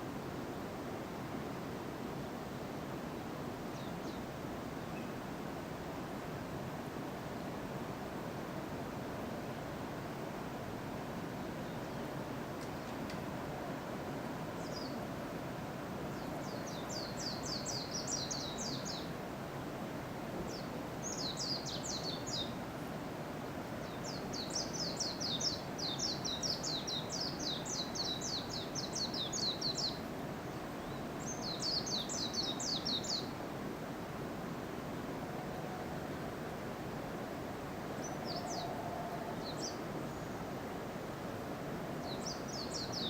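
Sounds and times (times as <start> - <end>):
small songbird singing: 3.7 - 5.2, 14.6 - 15.0, 16.1 - 19.2, 20.5 - 22.6, 23.8 - 33.4, 37.9 - 40.5, 42.0 - 43.0.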